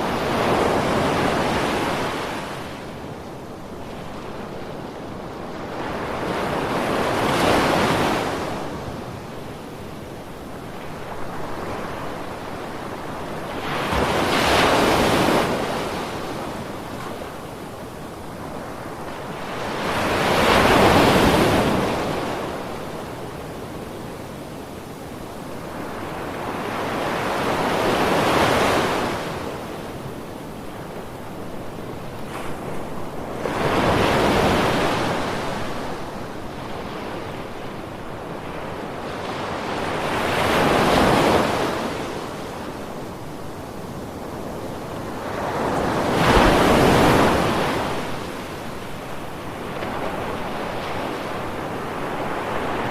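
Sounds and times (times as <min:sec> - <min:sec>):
ocean waves breaking: 0:44.8 - 0:52.9.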